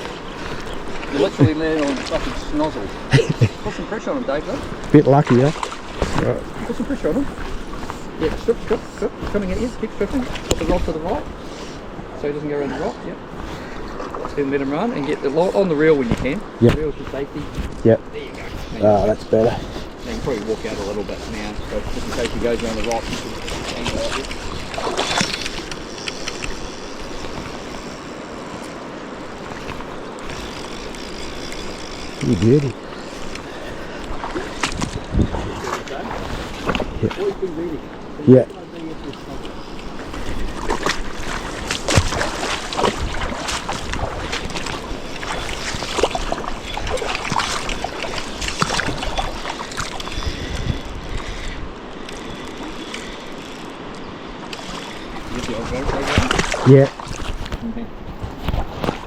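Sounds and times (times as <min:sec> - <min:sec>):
river water rushing: 0:00.0 - 0:17.7, 0:19.8 - 0:59.0
faint ticks: 0:25.0 - 0:27.8.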